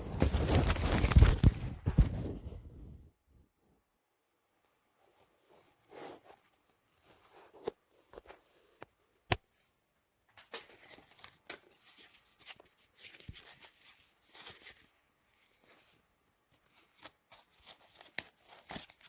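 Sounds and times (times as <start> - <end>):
rustling or crinkling: 0.0 - 3.1, 9.5 - 19.0.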